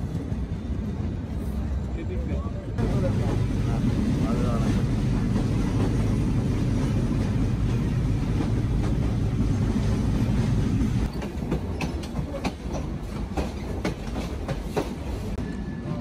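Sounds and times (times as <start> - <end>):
train rumbling on rails: 0.0 - 16.0
train wheels clicking over rail joints: 3.0 - 15.4.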